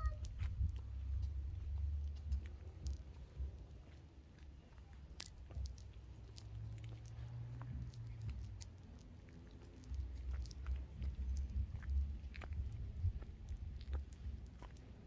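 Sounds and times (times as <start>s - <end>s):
person chewing food: 5.2s - 15.0s.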